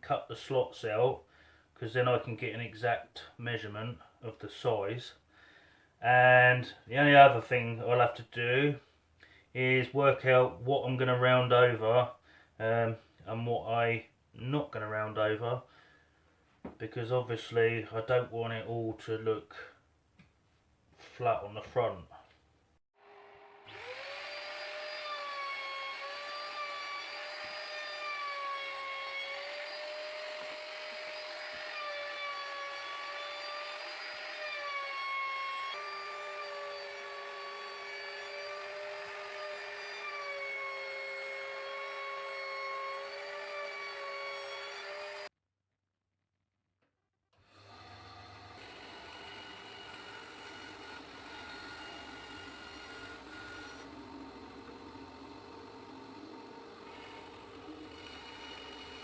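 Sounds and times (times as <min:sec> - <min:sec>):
electric router whine: 0:23.0 - 0:45.3, 0:47.4 - 0:59.0.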